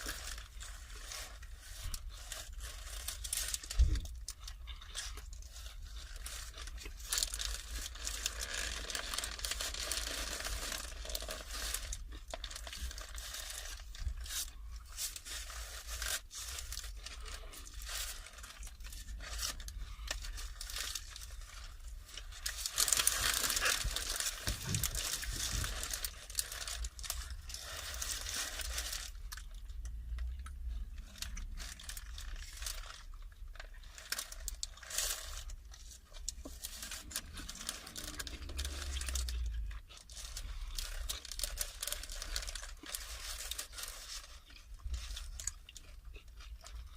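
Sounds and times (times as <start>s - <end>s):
paper wrapping crinkling and tearing: 0.0s - 46.9s
chewing: 32.2s - 46.9s.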